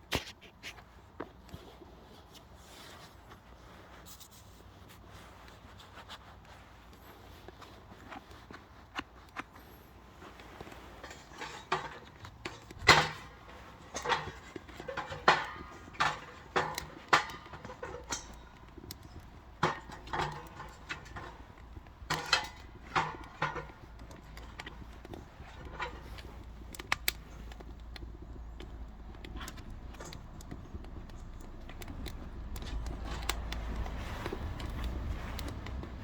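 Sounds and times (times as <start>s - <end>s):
wood knocking against metal stove: 11.0s - 35.9s.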